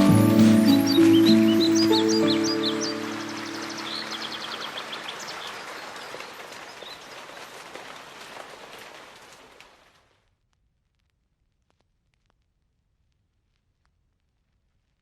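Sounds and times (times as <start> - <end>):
synth chord: 0.0 - 4.7
birds chirping: 0.0 - 8.4
outdoor hiss: 0.0 - 9.8.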